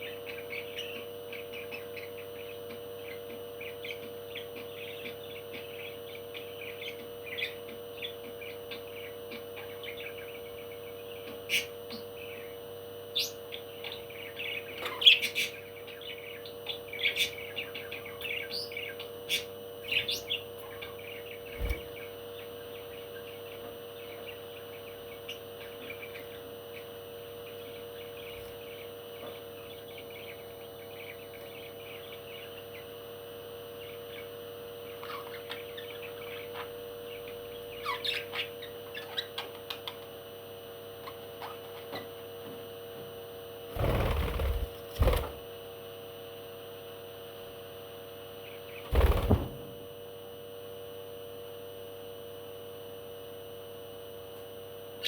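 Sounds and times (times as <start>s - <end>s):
steady hum: 15.5s - 35.0s, 43.4s - 51.5s.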